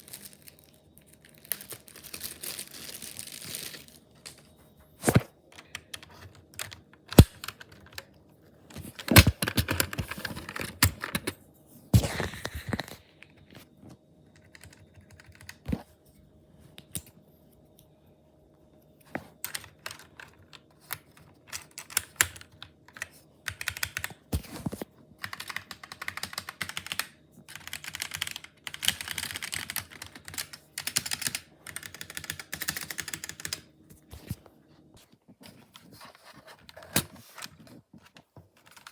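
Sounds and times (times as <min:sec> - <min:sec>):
mechanical keyboard typing: 0:05.6 - 0:08.1, 0:09.0 - 0:11.4, 0:14.3 - 0:15.7, 0:19.4 - 0:24.3, 0:25.2 - 0:33.7, 0:38.6 - 0:38.9.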